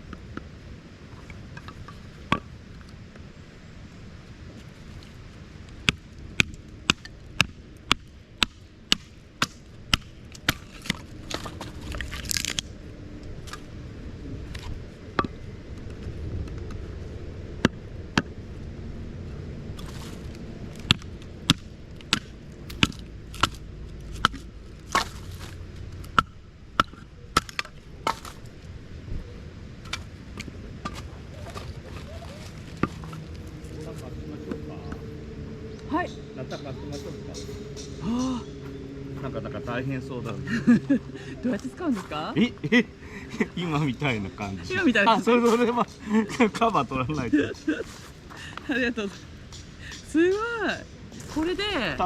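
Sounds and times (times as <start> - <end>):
axe chopping firewood: 5.8 - 12.6, 20.9 - 23.6, 24.2 - 28.4.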